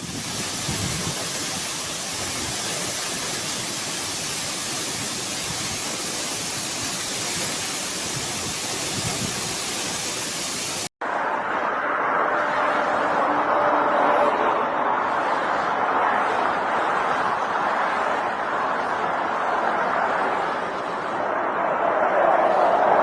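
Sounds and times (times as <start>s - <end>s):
heavy rain pouring: 0.0s - 10.9s
rushing noise: 0.0s - 23.0s.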